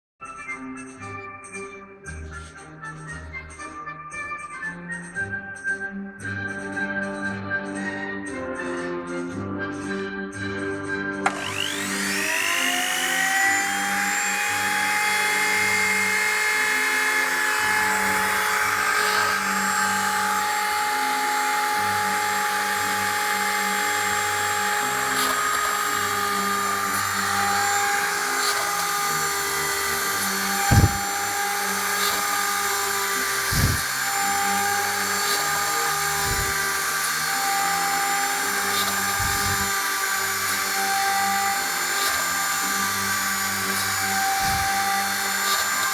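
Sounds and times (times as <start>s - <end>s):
rotary tool whining: 11.2s - 45.9s
stepper motors humming: 11.3s - 45.9s.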